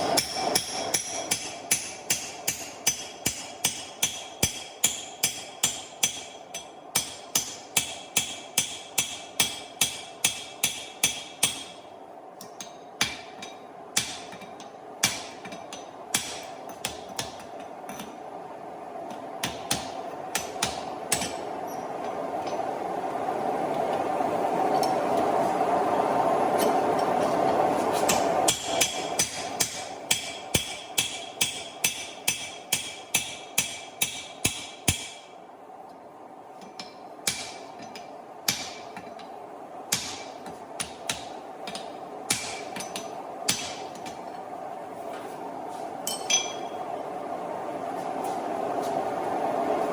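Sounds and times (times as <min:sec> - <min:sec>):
hammer striking steel: 0:00.2 - 0:11.8, 0:12.4 - 0:18.1, 0:19.4 - 0:21.8, 0:28.0 - 0:35.3, 0:36.6 - 0:39.2, 0:39.9 - 0:44.2, 0:46.1 - 0:46.9.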